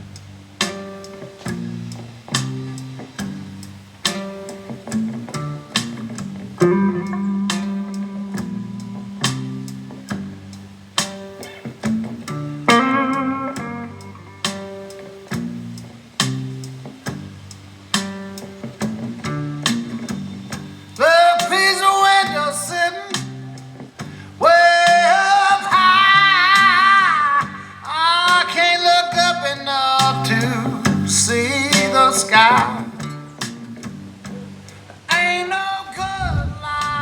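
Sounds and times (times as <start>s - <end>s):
song with guitar and singing: 4.0s - 10.4s, 11.0s - 15.4s, 20.5s - 37.0s
plucked bass line: 5.0s - 11.0s, 11.8s - 14.4s, 30.0s - 34.7s
loud sung phrases: 24.4s - 33.0s, 35.1s - 37.0s.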